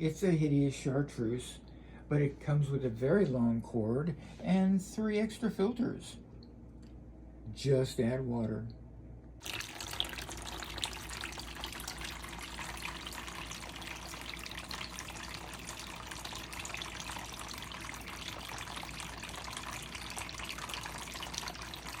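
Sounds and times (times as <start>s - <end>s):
fountain water trickling: 9.4s - 22.0s.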